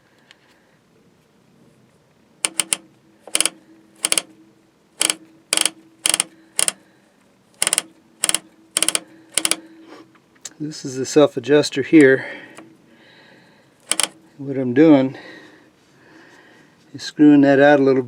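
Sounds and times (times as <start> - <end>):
brake adjuster ratcheting clicks: 5.0 - 6.8, 7.6 - 9.6.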